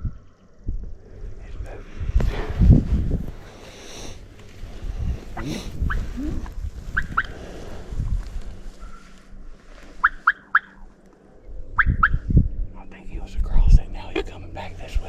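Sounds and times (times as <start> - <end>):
low thumps: 0.7 - 8.9
turkey yelps: 7.0 - 7.3, 10.0 - 10.7.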